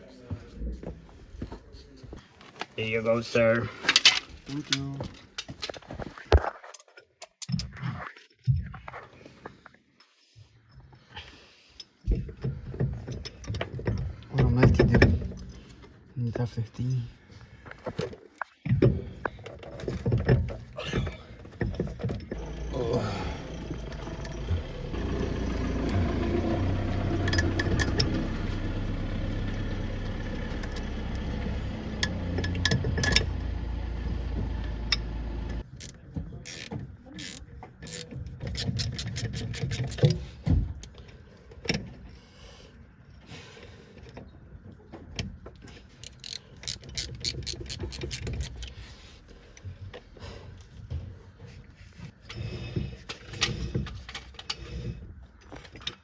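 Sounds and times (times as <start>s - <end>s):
machine hum: 22.3s - 35.7s
rapid ratchet clicking: 35.6s - 40.0s, 46.0s - 48.7s.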